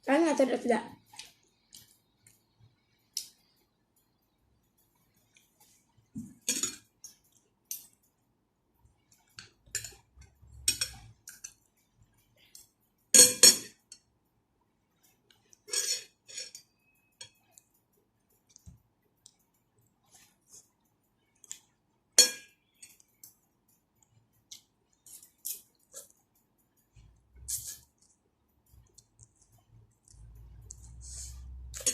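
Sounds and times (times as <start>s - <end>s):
cutlery clinking against a bowl: 6.3s - 8.0s, 9.3s - 11.7s, 12.6s - 14.1s, 15.6s - 17.7s, 22.2s - 23.1s.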